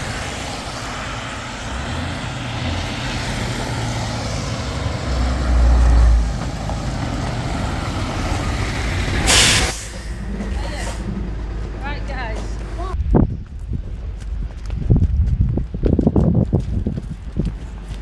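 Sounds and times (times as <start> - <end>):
vehicle engine drone: 0.0 - 13.1.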